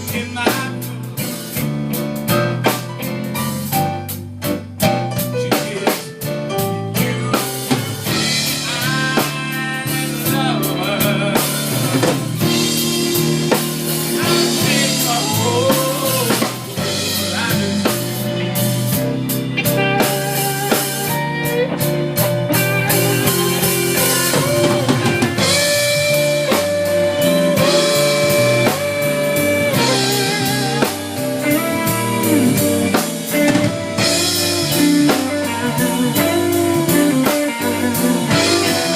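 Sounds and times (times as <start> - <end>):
bending lead guitar: 0.0 - 38.9
drum kit steady beat: 0.0 - 38.9.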